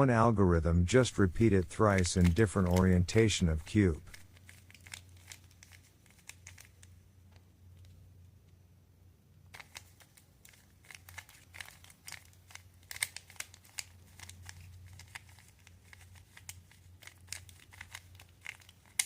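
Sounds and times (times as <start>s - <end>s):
plastic puzzle cube clicking: 1.8s - 3.2s, 4.0s - 7.0s, 9.6s - 19.0s.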